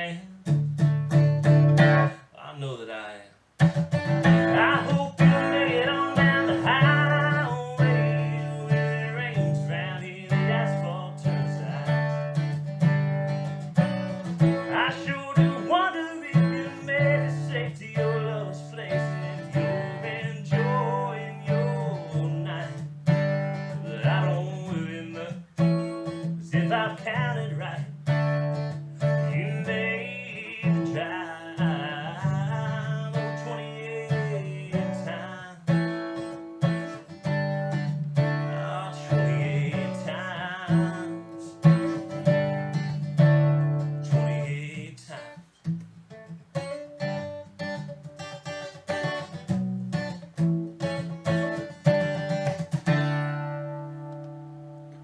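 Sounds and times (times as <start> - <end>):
acoustic guitar playing: 0.0 - 2.3, 3.4 - 55.0.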